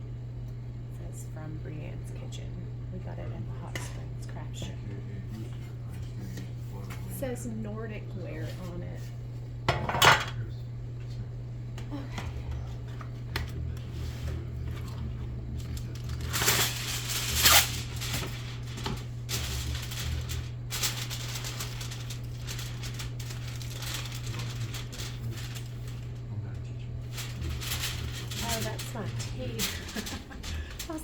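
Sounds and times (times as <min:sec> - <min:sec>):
steady low hum: 0:00.0 - 0:31.0
aluminium foil crinkling: 0:14.2 - 0:31.0.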